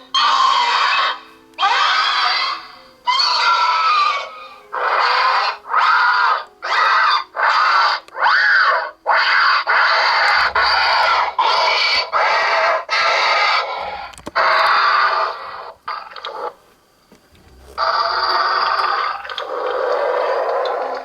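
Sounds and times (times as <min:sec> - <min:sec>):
harsh creature screeches from speaker: 0:00.1 - 0:15.7.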